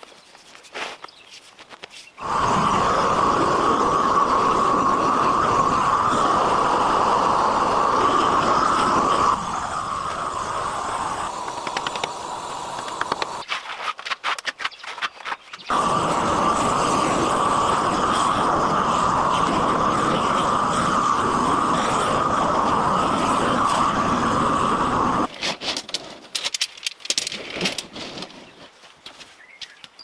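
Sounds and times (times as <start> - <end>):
power tool running: 2.2 - 13.4, 15.7 - 25.3.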